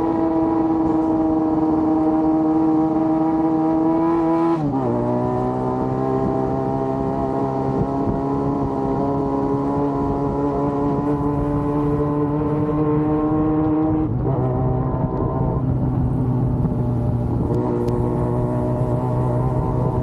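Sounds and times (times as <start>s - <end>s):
motorcycle engine at high revs: 0.0s - 20.0s.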